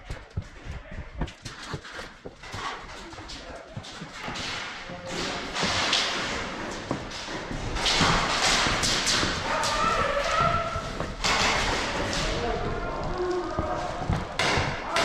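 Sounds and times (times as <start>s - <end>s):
thuds and knocks of players: 0.0s - 12.7s, 13.6s - 15.0s
distant shouted voice: 9.4s - 11.0s.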